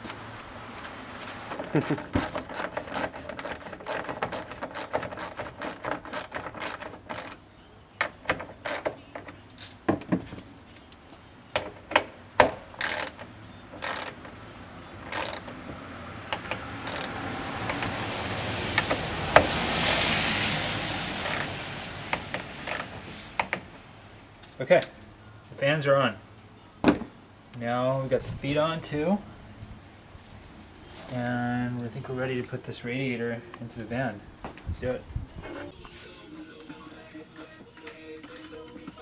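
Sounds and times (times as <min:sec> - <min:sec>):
tools and parts knocking: 0:01.5 - 0:07.3
hand ratchet clicking: 0:01.5 - 0:07.4, 0:12.8 - 0:13.2, 0:13.8 - 0:14.2, 0:15.1 - 0:15.5, 0:16.3 - 0:17.8, 0:21.2 - 0:21.5, 0:22.1 - 0:23.5.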